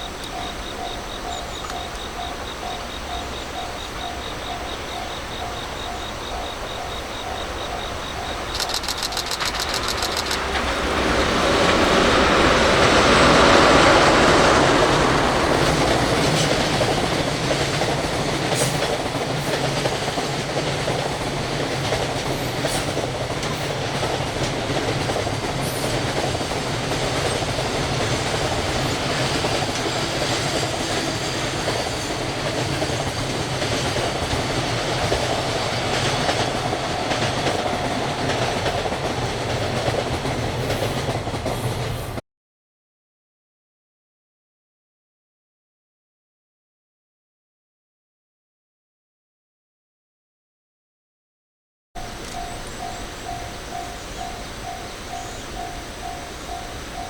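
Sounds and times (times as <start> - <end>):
level crossing warning bell: 0.0 - 9.7, 23.8 - 39.8, 52.0 - 57.0
train wheels on rail: 0.0 - 42.2, 52.0 - 57.0
sharp clicks: 8.5 - 10.7.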